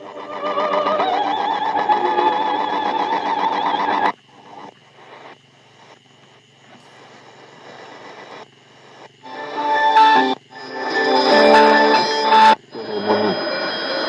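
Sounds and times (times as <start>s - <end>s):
faint radio static: 2.0s - 14.0s
shortwave radio station audio: 7.0s - 14.0s
thin steady whistle: 9.9s - 14.0s.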